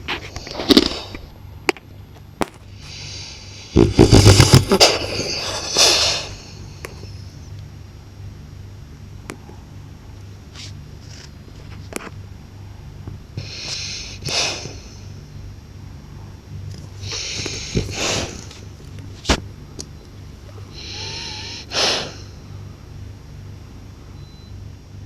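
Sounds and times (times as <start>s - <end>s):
dog snoring: 2.8s - 7.2s, 17.0s - 18.6s, 20.7s - 22.3s.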